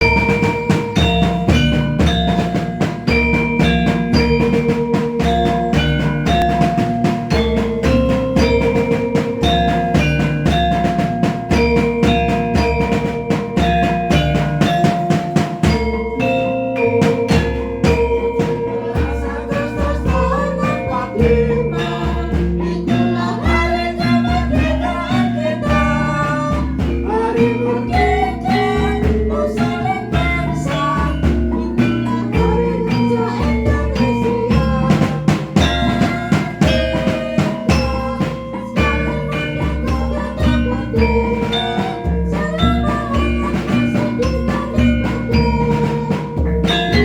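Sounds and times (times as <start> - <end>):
person singing: 15.8 - 47.0.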